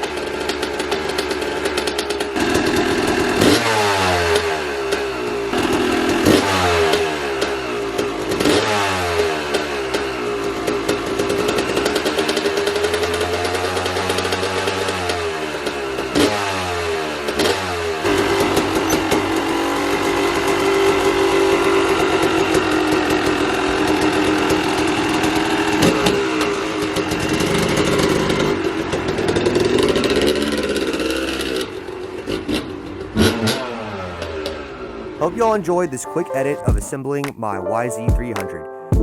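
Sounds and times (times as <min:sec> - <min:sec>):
dirt bike engine revving: 0:02.4 - 0:28.6.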